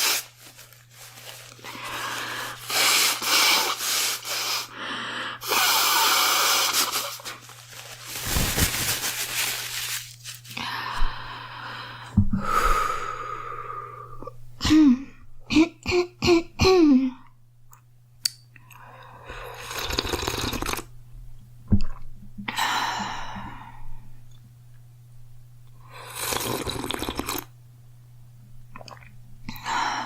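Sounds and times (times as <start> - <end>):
loud noisy breathing: 1.7 - 7.2
girl coughing: 14.6 - 17.2.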